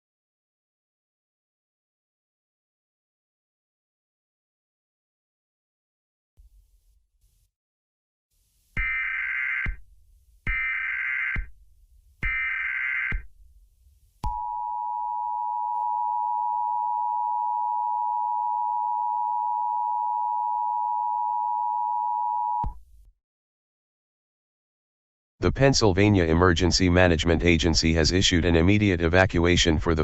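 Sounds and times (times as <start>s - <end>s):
digital header data bursts: 8.8s - 9.8s, 12.2s - 13.2s.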